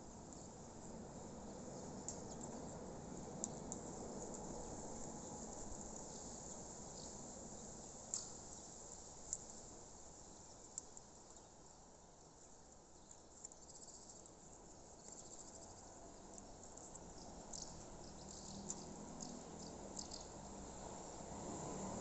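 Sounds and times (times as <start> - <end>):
crickets chirping: 15.0 - 22.0.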